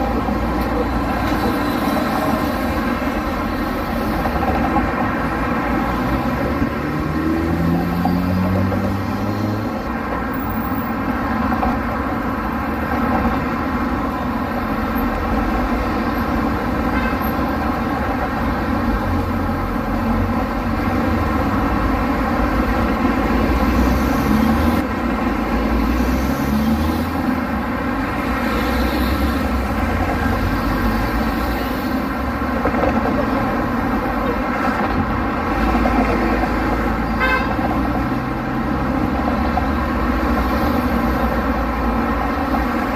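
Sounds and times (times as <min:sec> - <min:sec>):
traffic running: 0:00.0 - 0:42.9
car horns: 0:16.8 - 0:17.6, 0:37.0 - 0:37.9.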